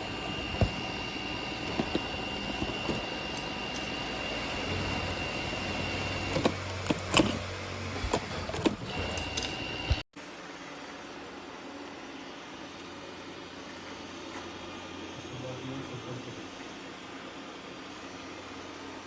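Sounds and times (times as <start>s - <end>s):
robot vacuum motor whine: 0.0s - 10.0s.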